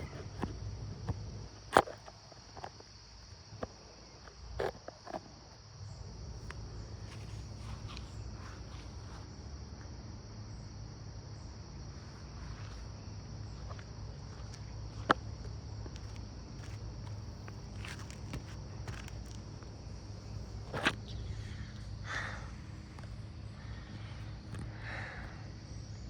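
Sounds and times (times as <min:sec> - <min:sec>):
insect chorus drone: 0:00.0 - 0:26.0
low background rumble: 0:05.6 - 0:26.0.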